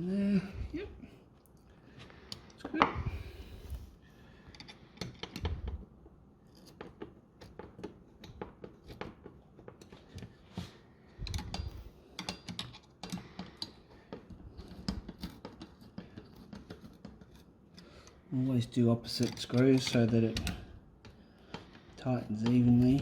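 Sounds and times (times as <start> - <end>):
clicks and scrapes of hardware: 6.5 - 18.2, 19.0 - 23.0.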